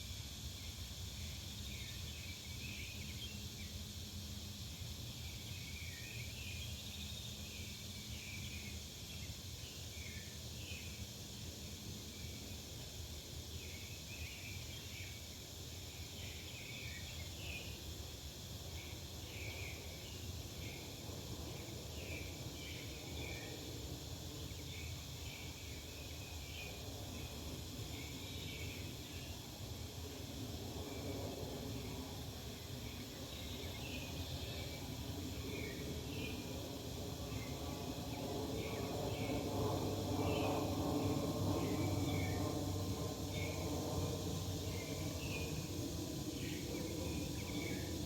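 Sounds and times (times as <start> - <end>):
steady high hiss: 0.0 - 48.0
small birds chirping: 0.6 - 4.0, 4.7 - 12.7, 13.4 - 29.5, 30.8 - 48.0
distant traffic rumble: 38.4 - 48.0.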